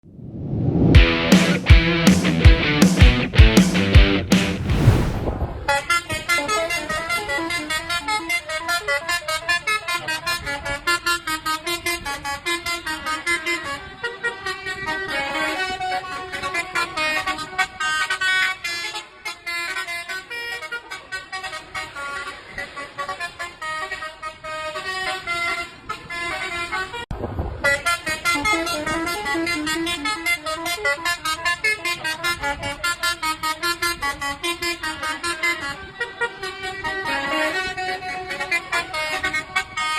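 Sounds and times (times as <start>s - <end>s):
short low rumble: 4.4s - 5.6s.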